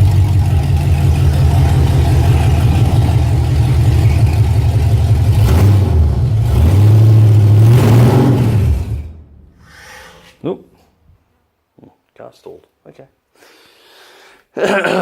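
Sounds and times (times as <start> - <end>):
car engine running loudly: 0.0 - 9.3.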